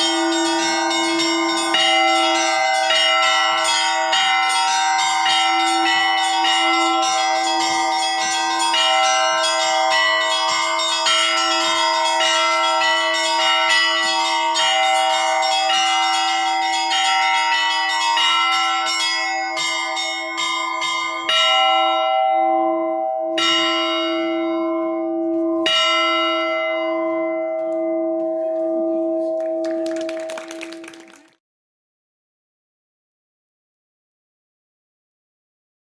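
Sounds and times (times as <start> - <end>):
rapid strikes on small bells: 0.0 - 22.1
church bells pealing: 0.0 - 31.0
low bell humming: 18.2 - 31.2.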